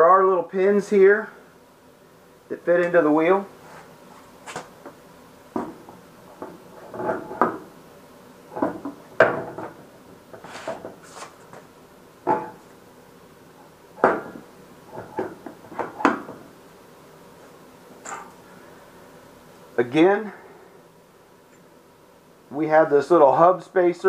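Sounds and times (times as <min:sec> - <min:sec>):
metal clunks and knocks: 0:12.2 - 0:12.6, 0:14.0 - 0:14.4.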